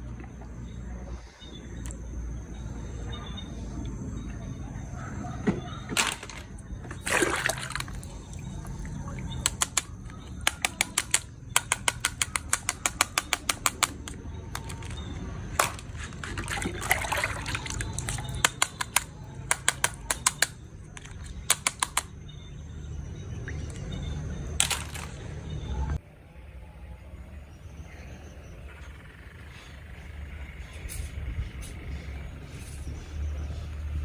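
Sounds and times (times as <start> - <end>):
rapid sharp clicks: 9.2 - 15.9, 17.7 - 22.2.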